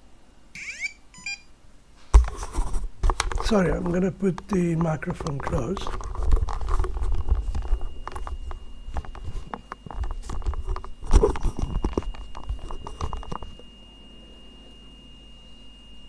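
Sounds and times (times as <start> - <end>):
faint high whine: 0.0 - 16.0
microphone handling rubbing and knocks: 2.0 - 13.7.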